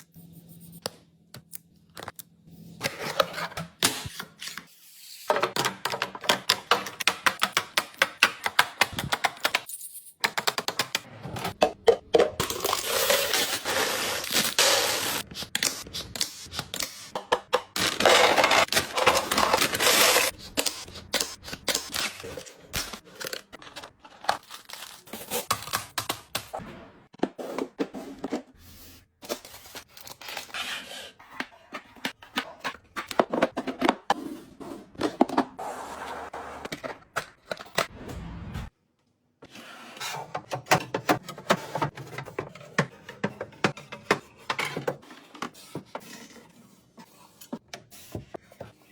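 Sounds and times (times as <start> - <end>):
packaging rustling and tearing: 17.8 - 26.0.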